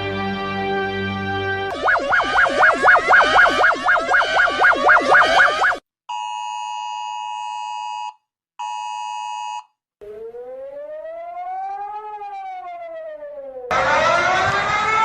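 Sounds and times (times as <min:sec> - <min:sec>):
rising siren tone: 0:01.7 - 0:05.8, 0:10.0 - 0:15.0
two-tone emergency alert signal: 0:01.7 - 0:05.8.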